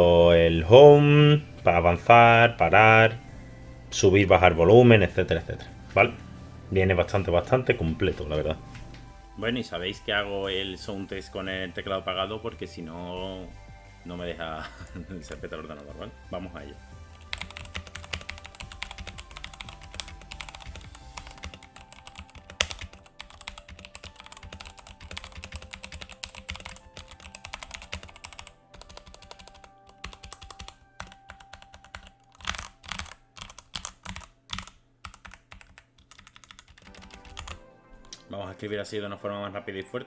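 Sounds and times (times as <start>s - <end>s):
mechanical keyboard typing: 17.1s - 37.6s.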